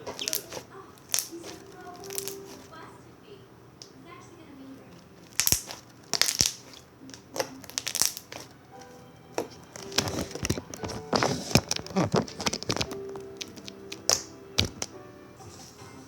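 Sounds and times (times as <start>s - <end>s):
slime squished by hand: 0.0s - 2.7s, 5.2s - 15.0s
faint background music: 0.0s - 16.0s.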